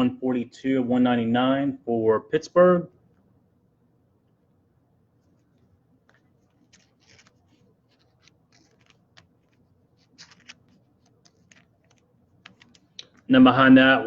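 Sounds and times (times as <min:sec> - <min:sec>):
trading cards rustling and clicking: 0:05.3 - 0:13.4.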